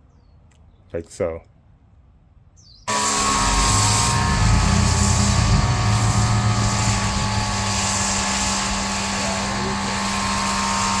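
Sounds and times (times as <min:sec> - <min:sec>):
high-pressure spray hiss: 0:02.9 - 0:11.0
pressure washer motor hum: 0:02.9 - 0:11.0.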